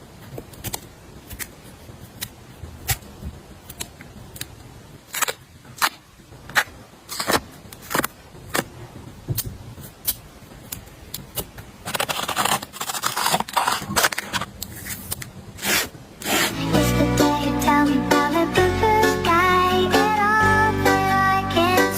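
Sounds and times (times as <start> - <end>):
packaging rustling and scraping: 6.5 - 8.7, 11.8 - 16.9.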